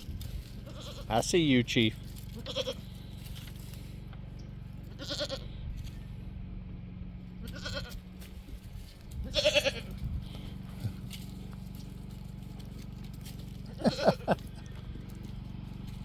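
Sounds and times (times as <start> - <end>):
goats bleating: 0.6 - 3.2, 4.9 - 5.5, 7.4 - 8.0, 9.2 - 11.2, 13.6 - 15.2.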